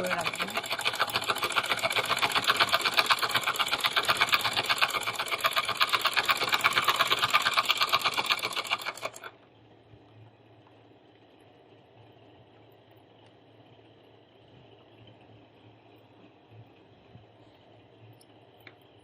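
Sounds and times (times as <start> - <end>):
treadle sewing machine clattering: 0.0 - 9.4.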